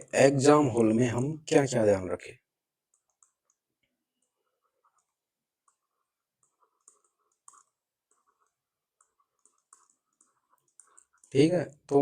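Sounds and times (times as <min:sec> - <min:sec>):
faint irregular clicks: 0:02.8 - 0:11.4.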